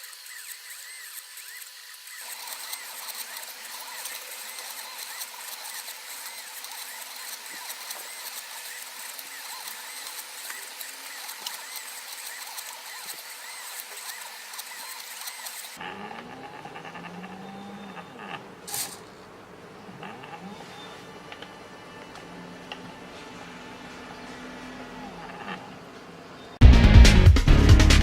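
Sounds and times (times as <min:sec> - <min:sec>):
stepper motors whining: 0:00.0 - 0:26.2.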